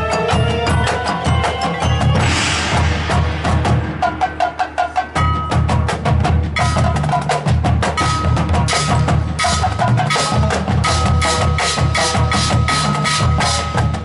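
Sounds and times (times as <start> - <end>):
marching band playing: 0.0 - 14.0
sharp percussion strikes: 0.0 - 14.0.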